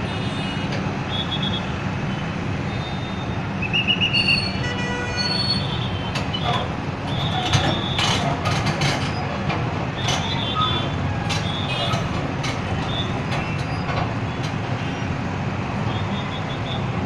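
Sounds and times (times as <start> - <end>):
excavator diesel engine running: 5.6 - 17.0
metal clanks: 6.1 - 14.6.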